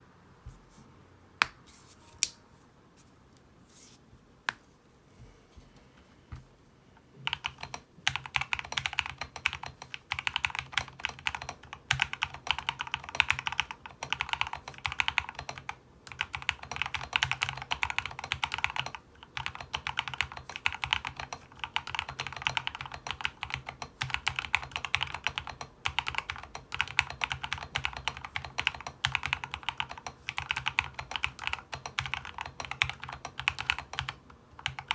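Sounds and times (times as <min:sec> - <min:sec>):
mechanical keyboard typing: 0:07.2 - 0:34.9.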